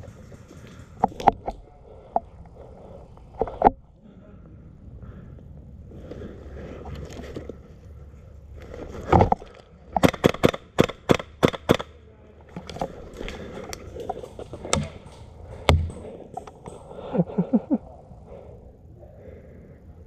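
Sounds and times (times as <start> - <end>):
airsoft rifle shots: 10.0 - 12.0.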